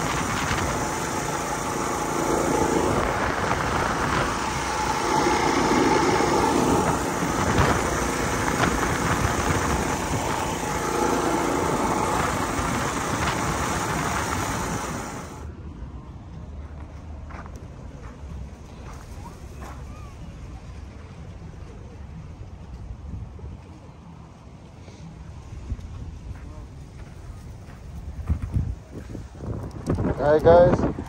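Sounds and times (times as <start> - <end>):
mini bike engine running: 0.0 - 15.5.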